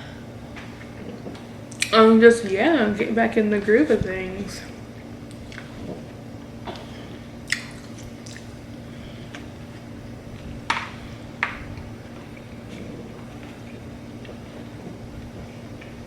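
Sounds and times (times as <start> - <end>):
steady low hum: 0.0 - 16.0
person chewing food: 5.3 - 16.0.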